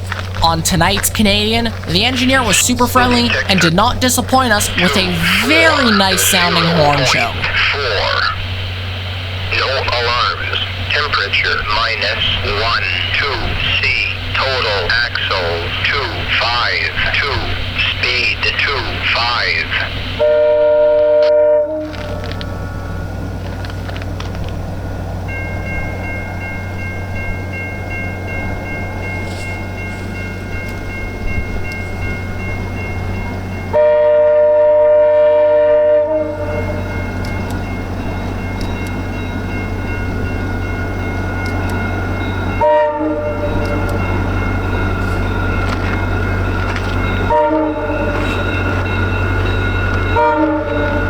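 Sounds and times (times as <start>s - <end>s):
train rumble and rail noise: 0.0s - 51.0s
locomotive horn: 10.6s - 22.6s, 33.7s - 36.9s, 42.5s - 51.0s.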